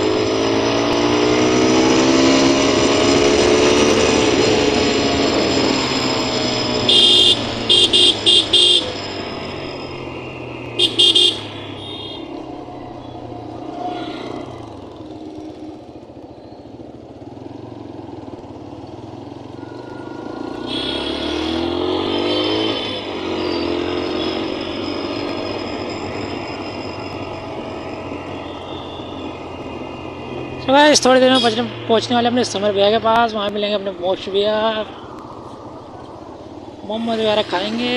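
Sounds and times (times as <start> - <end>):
motorcycle engine running: 0.0 - 37.9
vehicle horns beeping: 6.8 - 9.7, 10.6 - 12.6, 19.6 - 24.9, 28.2 - 29.4, 31.1 - 31.9.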